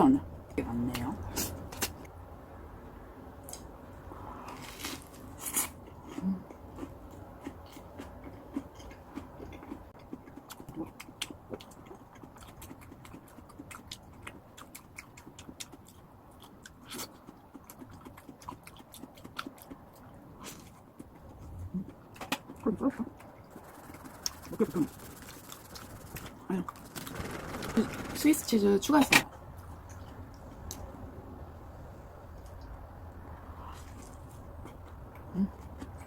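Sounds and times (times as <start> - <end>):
chewing and biting sandwich: 4.3 - 27.0.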